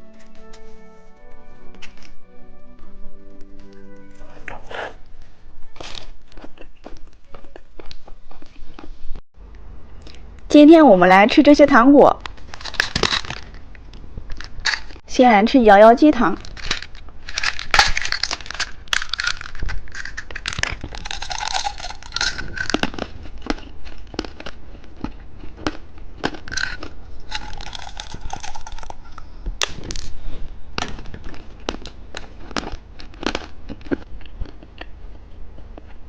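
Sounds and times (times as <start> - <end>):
plastic packaging crinkling: 12.3 - 13.6, 16.4 - 24.3, 26.6 - 30.2.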